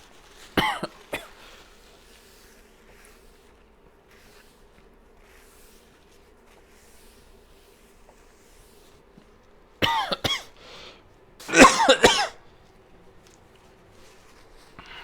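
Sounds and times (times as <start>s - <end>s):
person coughing: 0.6s - 1.4s, 9.8s - 10.6s, 11.4s - 12.4s.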